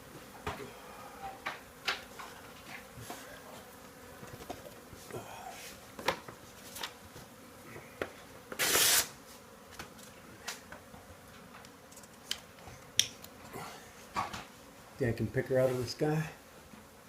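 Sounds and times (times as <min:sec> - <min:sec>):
bees buzzing: 0:00.0 - 0:17.0.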